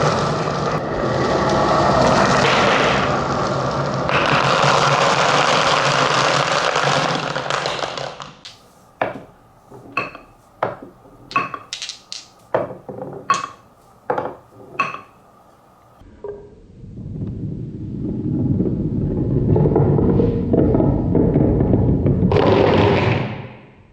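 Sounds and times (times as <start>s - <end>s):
balls clacking on wooden track: 2.4s - 16.0s, 19.7s - 23.3s
marbles rattling down wooden run: 3.9s - 8.2s, 9.1s - 15.2s.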